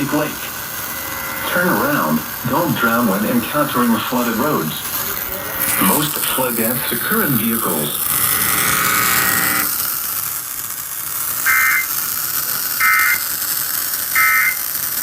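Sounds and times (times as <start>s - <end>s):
steady buzzing tone: 0.0s - 15.0s.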